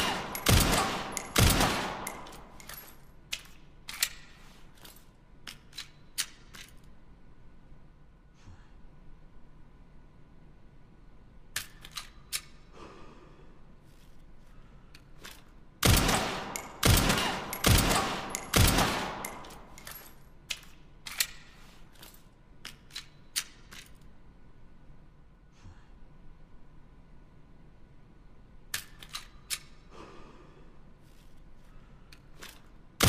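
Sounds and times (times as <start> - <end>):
pistol shots: 0.0 - 2.6, 15.8 - 19.7.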